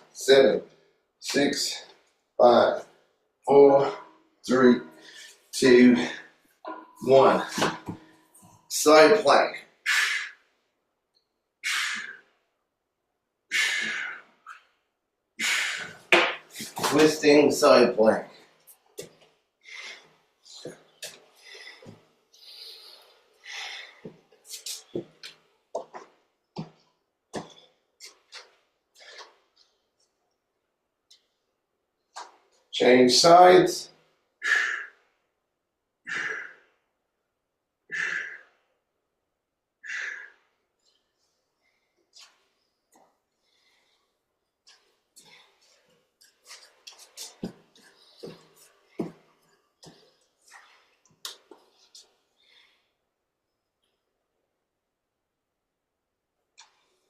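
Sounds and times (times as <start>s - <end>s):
person breathing hard: 9.9s - 10.5s, 11.6s - 12.3s, 13.5s - 14.6s, 15.4s - 16.8s, 19.6s - 25.2s, 34.4s - 35.1s, 36.0s - 36.8s, 37.9s - 38.7s, 39.8s - 40.6s
person breathing out hard: 11.6s - 12.3s, 13.5s - 14.4s, 15.4s - 16.8s, 36.1s - 36.8s, 37.9s - 38.6s, 39.8s - 40.5s.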